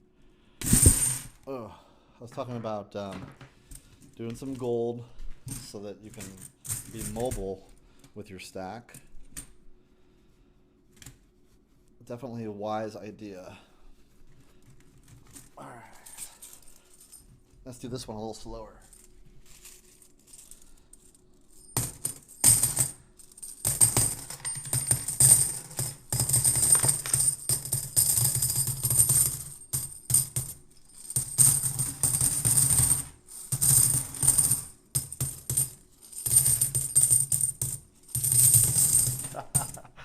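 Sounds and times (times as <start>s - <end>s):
coins jingling and clinking: 18.8s - 39.8s.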